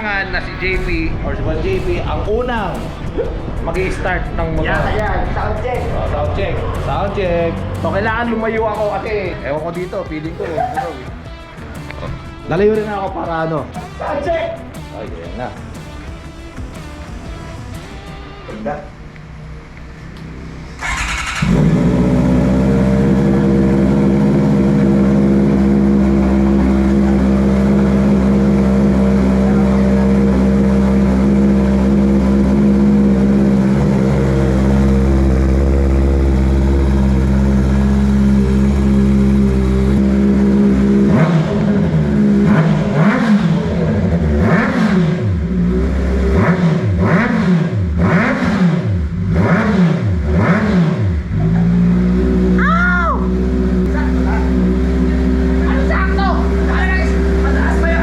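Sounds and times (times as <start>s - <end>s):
motorcycle engine idling and revving: 0.0s - 58.0s.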